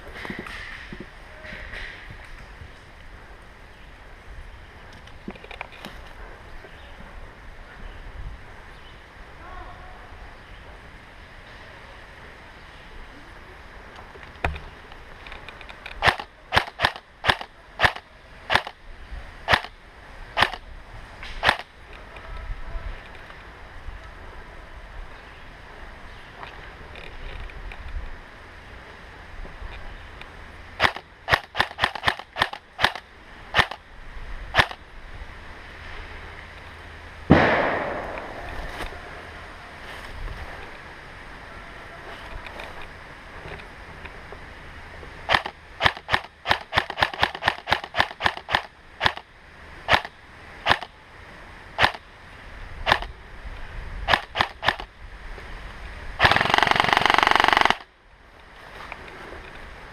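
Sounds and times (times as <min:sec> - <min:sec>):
airsoft gun shots: 0:16.0 - 0:18.8, 0:19.5 - 0:19.7, 0:21.4 - 0:21.7, 0:30.8 - 0:33.0, 0:37.3 - 0:38.5, 0:45.3 - 0:49.2, 0:49.9 - 0:50.1, 0:51.8 - 0:52.0
loud bang: 0:37.3 - 0:38.8.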